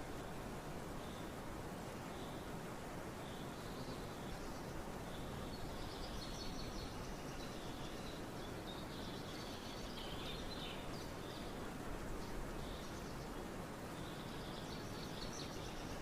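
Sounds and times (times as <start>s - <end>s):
steady rain: 0.0s - 16.0s
small birds chirping: 3.2s - 16.0s.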